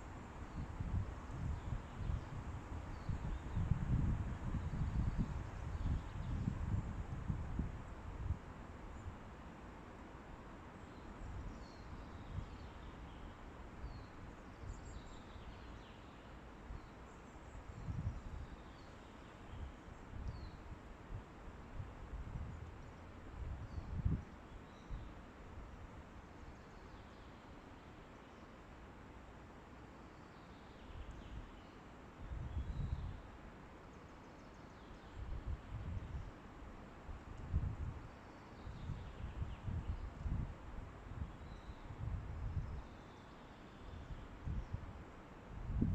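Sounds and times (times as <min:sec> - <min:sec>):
wind in forest: 0:00.0 - 0:45.9
wind gusts on microphone: 0:00.3 - 0:09.3, 0:17.7 - 0:18.5, 0:21.1 - 0:24.3, 0:32.2 - 0:33.2, 0:35.2 - 0:36.3, 0:37.1 - 0:38.0, 0:38.6 - 0:42.8, 0:44.0 - 0:45.9
wind gusts buffeting microphone: 0:00.5 - 0:08.5, 0:37.2 - 0:38.0, 0:45.6 - 0:45.9.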